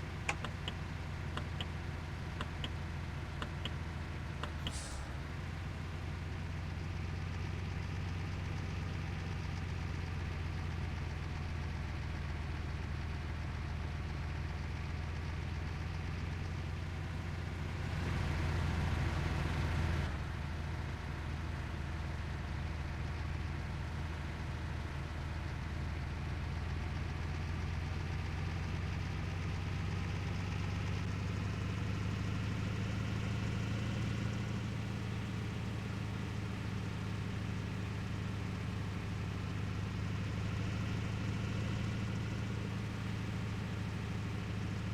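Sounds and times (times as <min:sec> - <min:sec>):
truck diesel engine running: 0:00.0 - 0:20.0.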